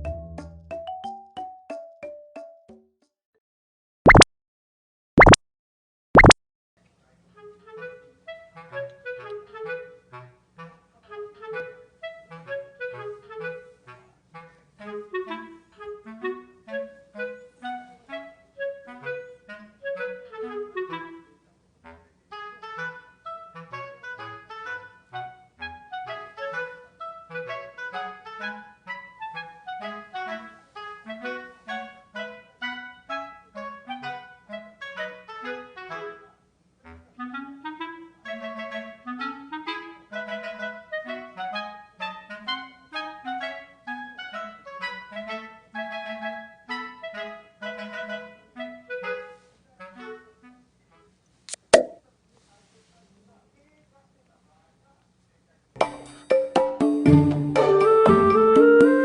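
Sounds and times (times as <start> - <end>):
light instrumental tune: 0.0 - 2.9, 55.8 - 59.0
bouncy woodwind melody: 7.4 - 21.4, 22.3 - 36.3, 37.1 - 50.7, 57.1 - 59.0.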